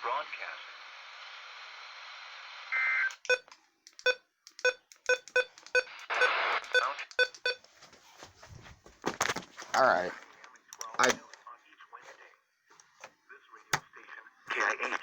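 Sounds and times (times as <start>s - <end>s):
short button beeps: 3.2s - 7.6s
radio static bursts: 5.9s - 7.1s.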